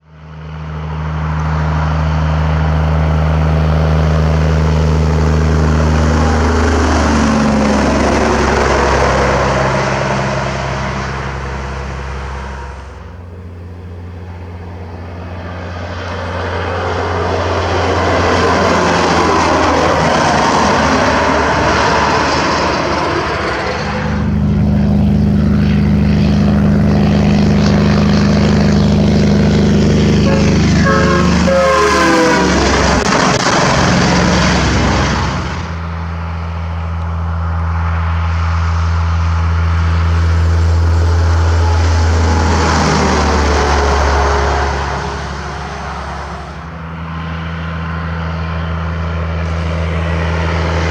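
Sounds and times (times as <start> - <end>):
trucks passing on highway: 0.0 - 50.9.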